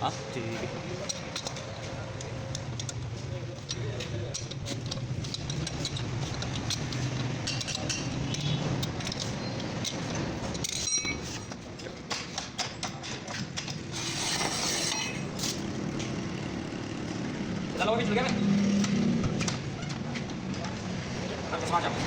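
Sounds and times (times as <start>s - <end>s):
metal tools clinking: 1.0s - 15.7s.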